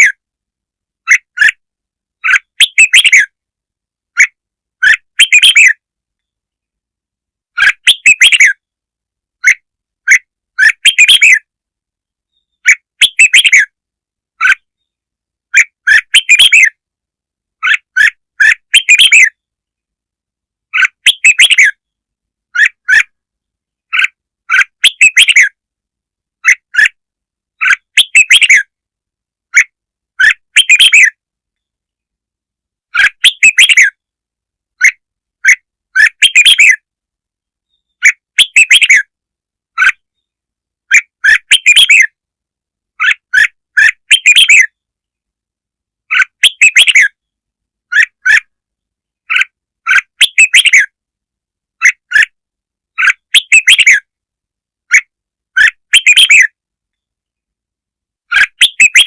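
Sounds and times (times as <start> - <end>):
bird song chirpy phrases: 2.2 - 3.4, 4.1 - 6.8, 7.5 - 16.8, 17.5 - 19.9, 20.6 - 25.7, 26.4 - 28.8, 29.4 - 32.2, 32.8 - 34.1, 34.8 - 36.9, 37.6 - 42.2, 42.9 - 45.2, 46.0 - 51.0, 52.9 - 54.2, 54.9 - 57.3, 58.2 - 59.0.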